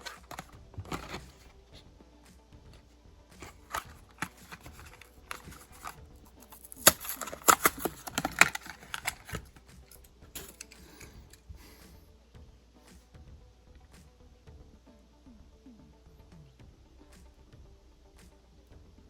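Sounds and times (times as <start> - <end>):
packaging crackling: 0.0 - 1.5, 3.4 - 9.6.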